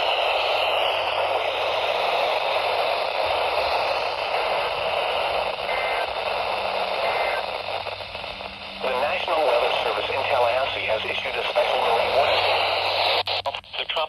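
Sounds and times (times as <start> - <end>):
faint two-tone data burst: 0.0 - 13.5
radio static hiss: 0.0 - 14.0.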